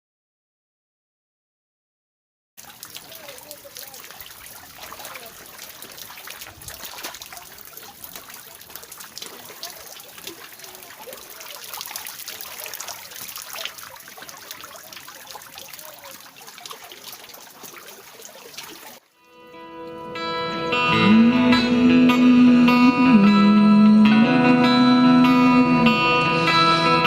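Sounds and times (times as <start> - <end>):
river water babbling: 2.6 - 22.7
guitar music: 19.2 - 27.0.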